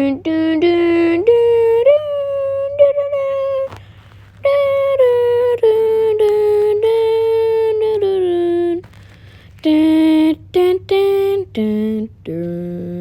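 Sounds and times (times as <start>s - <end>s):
child singing wordless tune: 0.0s - 3.8s, 4.4s - 8.8s, 9.6s - 13.0s.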